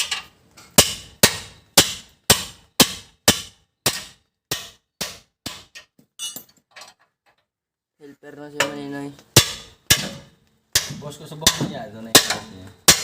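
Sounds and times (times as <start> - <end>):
hammer striking metal: 0.0 - 6.5, 9.4 - 13.0.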